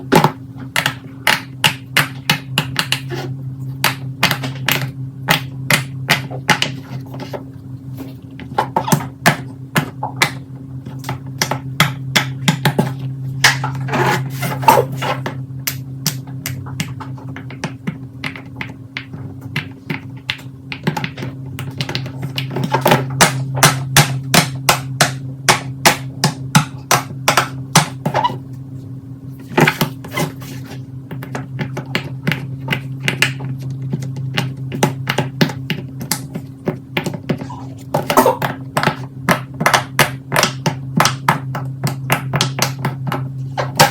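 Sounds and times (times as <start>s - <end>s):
steady low hum: 0.0s - 43.9s.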